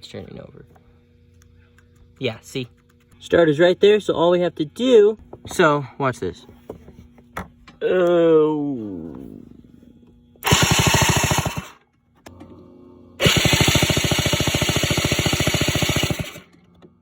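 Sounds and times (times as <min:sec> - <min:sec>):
electric starter cranking engine: 0:10.4 - 0:11.8, 0:13.2 - 0:16.7.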